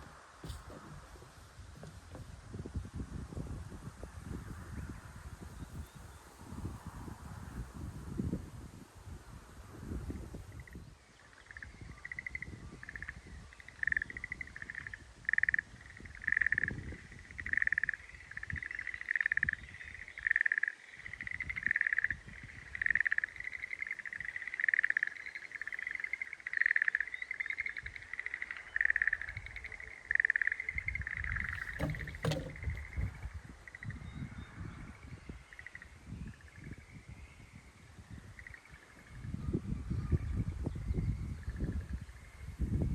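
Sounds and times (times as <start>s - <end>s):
tree frog trilling calls: 17.4s - 33.8s
sharp knock: 31.6s - 33.2s.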